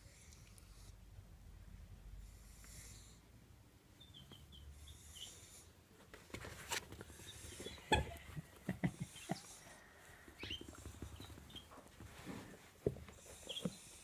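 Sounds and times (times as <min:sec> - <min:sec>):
mice squeaking: 0:04.0 - 0:05.6, 0:07.0 - 0:08.4, 0:10.2 - 0:11.9, 0:13.2 - 0:14.0
scratching and rustling: 0:06.0 - 0:14.0.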